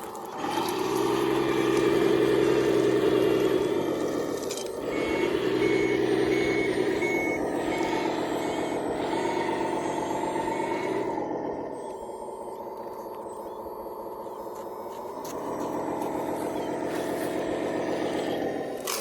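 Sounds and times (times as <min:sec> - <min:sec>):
machinery hum and whine: 0:00.0 - 0:19.0
reversing alarm beeping: 0:00.7 - 0:18.9.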